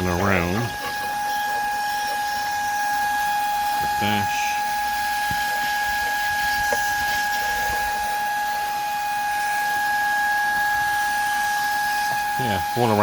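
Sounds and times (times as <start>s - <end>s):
cordless vacuum running: 0.0s - 13.0s.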